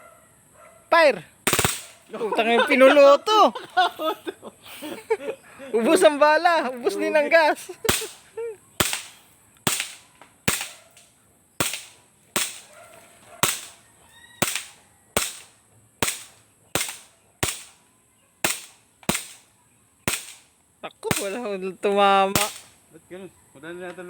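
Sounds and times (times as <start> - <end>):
airsoft pistol shots: 1.4 - 2.1, 7.9 - 10.8, 11.6 - 12.7, 13.4 - 13.8, 14.4 - 17.8, 18.4 - 20.5, 21.1 - 21.4, 22.3 - 22.8.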